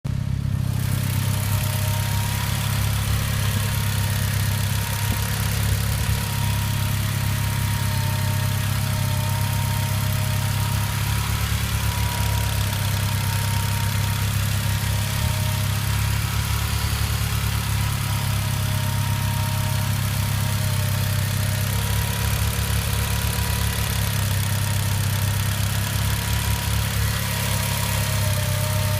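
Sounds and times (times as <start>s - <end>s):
engine idling: 0.0s - 28.9s.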